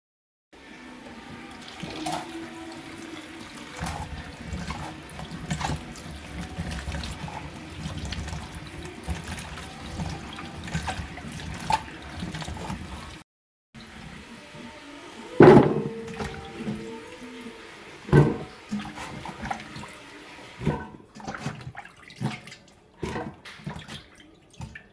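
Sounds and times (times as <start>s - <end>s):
water running and splashing: 0.6s - 13.2s, 13.8s - 24.9s.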